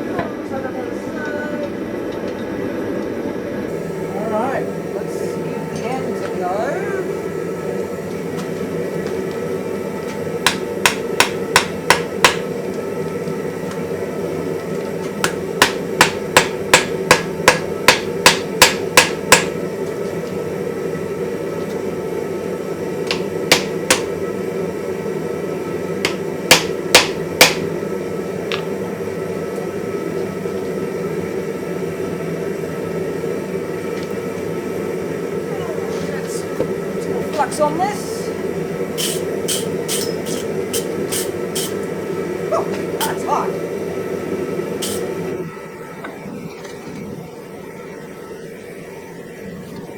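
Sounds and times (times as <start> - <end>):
steady drone: 0.0 - 49.7
hammer striking hot iron on anvil: 10.0 - 12.7, 15.2 - 19.6, 23.0 - 24.2, 26.0 - 27.7, 39.0 - 41.9, 42.7 - 43.2, 44.8 - 45.2.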